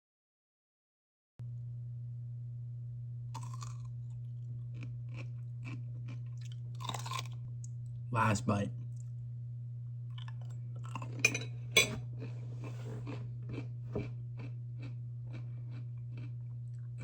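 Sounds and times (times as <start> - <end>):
pickle crunching: 3.4 - 4.0, 4.6 - 7.7, 10.1 - 17.0
person chewing: 3.4 - 7.4, 10.1 - 11.2, 11.9 - 17.0.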